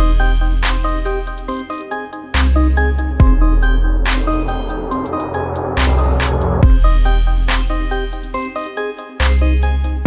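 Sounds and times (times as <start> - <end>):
electronic music: 0.0 - 8.5.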